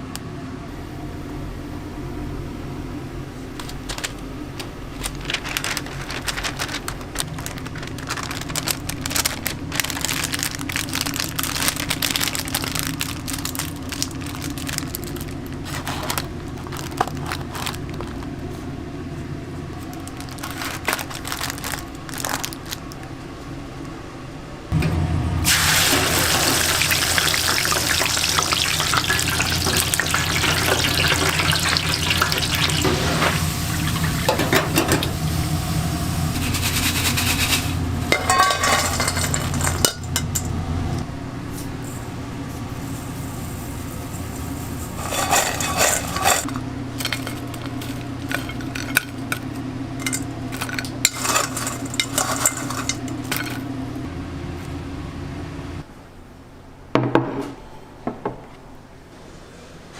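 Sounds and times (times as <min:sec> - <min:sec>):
steady low hum: 0:00.0 - 0:56.9
food sizzling in a hot pan: 0:25.4 - 0:39.3
utensils clattering on cookware: 0:25.5 - 0:35.2, 0:36.4 - 0:40.6, 0:44.0 - 0:53.6.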